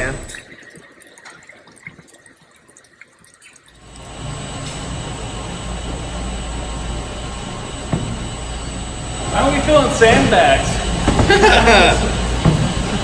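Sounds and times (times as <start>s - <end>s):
faint drips and ticks: 0.0s - 4.1s
running water rushing: 0.0s - 13.0s.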